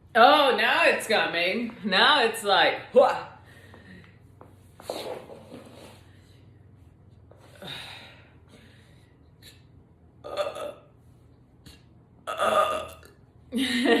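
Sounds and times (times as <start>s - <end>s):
woman burping: 10.2s - 10.9s, 12.3s - 14.0s.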